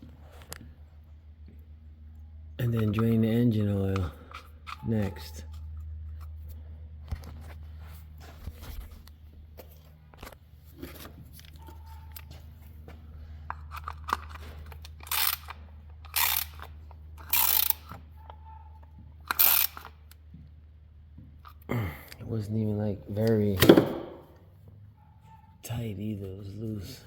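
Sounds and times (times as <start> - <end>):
ratchet wrench rasping: 13.5 - 18.0, 19.2 - 20.1
small tool clicks: 13.7 - 18.0, 19.3 - 20.0.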